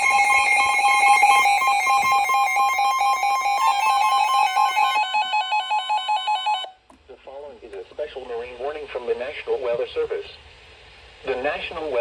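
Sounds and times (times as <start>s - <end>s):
emergency alert warbling tone: 0.0s - 6.7s.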